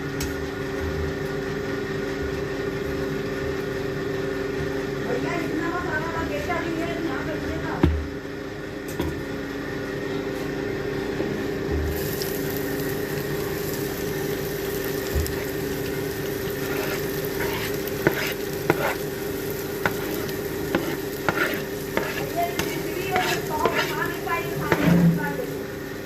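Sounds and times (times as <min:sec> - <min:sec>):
steady hum: 0:00.0 - 0:26.0
food sizzling in oil: 0:11.9 - 0:26.0.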